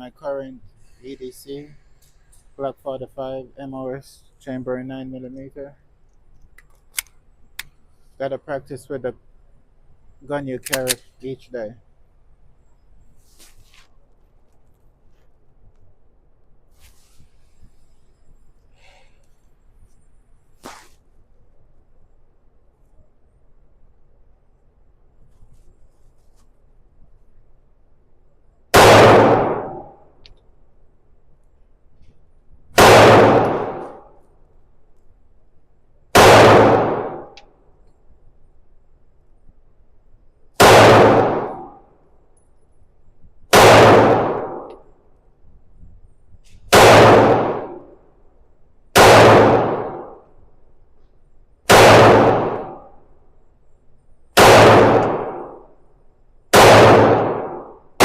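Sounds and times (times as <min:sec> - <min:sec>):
pistol shots: 0:28.7 - 0:30.0, 0:32.8 - 0:34.2, 0:36.1 - 0:37.4, 0:40.6 - 0:41.8, 0:43.5 - 0:44.8, 0:46.7 - 0:48.0, 0:49.0 - 0:50.3, 0:51.7 - 0:52.9, 0:54.4 - 0:55.7, 0:56.5 - 0:58.0.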